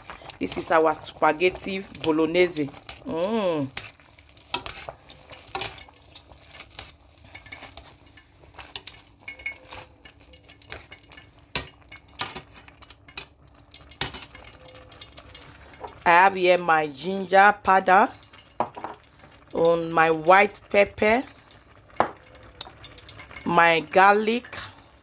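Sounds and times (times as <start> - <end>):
kitchen utensils and dishes clinking: 0.5 - 16.0, 22.0 - 25.0.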